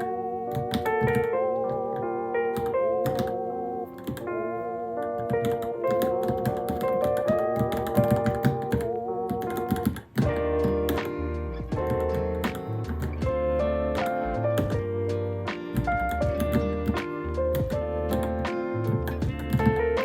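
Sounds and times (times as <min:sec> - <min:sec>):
fast keyboard typing: 0:00.0 - 0:03.4, 0:04.0 - 0:04.3, 0:05.1 - 0:11.1, 0:11.7 - 0:14.9, 0:15.7 - 0:20.0
background music: 0:00.0 - 0:20.0
low bass line: 0:10.3 - 0:20.0.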